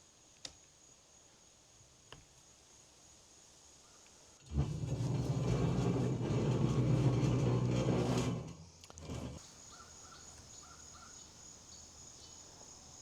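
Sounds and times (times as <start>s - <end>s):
insects trilling: 8.6s - 13.0s.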